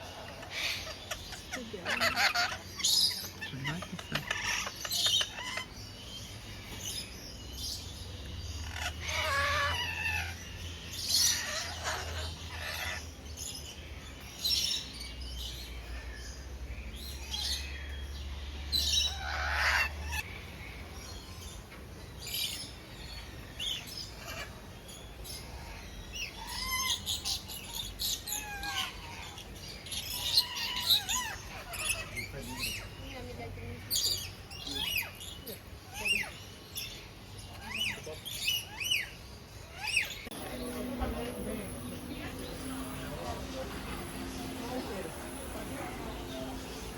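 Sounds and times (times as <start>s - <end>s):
parrots squawking and whistling: 0.1s - 5.9s, 8.6s - 13.2s, 18.7s - 20.3s, 23.8s - 24.6s, 25.4s - 33.1s, 33.8s - 46.9s
low steady hum: 40.3s - 46.9s.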